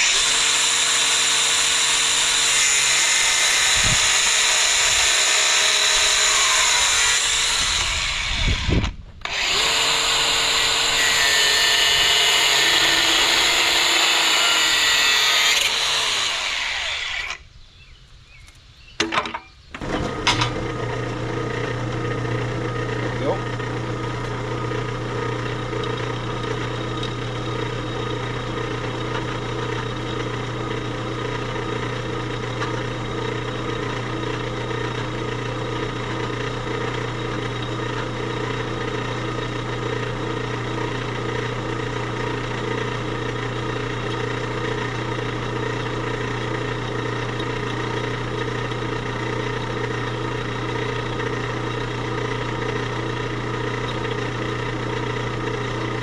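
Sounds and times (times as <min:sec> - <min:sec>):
machine humming: 0:03.2 - 0:17.5.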